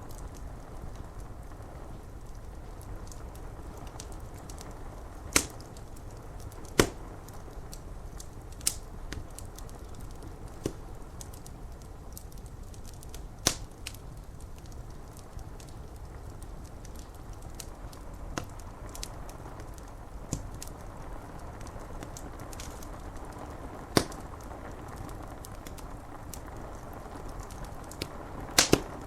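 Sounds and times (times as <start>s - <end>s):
wood fire crackling: 0.0s - 29.0s
loud sharp pops: 5.3s - 5.8s, 6.4s - 7.3s, 10.5s - 11.0s, 13.1s - 14.0s, 19.6s - 20.7s, 23.9s - 24.5s, 27.5s - 29.0s.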